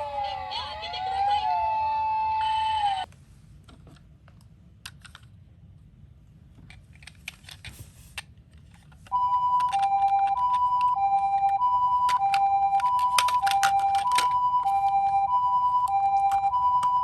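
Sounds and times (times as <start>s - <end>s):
toy two-tone electronic siren: 0.0s - 3.1s, 9.1s - 17.0s
plastic toy cars clicking: 3.7s - 5.4s, 6.6s - 15.2s, 15.8s - 17.0s.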